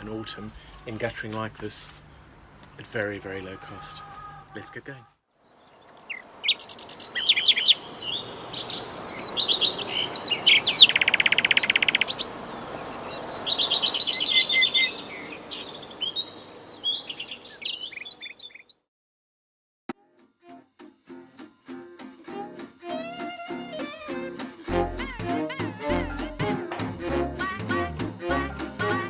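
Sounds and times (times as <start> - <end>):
songbirds chirping and singing: 0.0 - 1.5, 3.0 - 18.8
acoustic guitar music: 20.1 - 29.0.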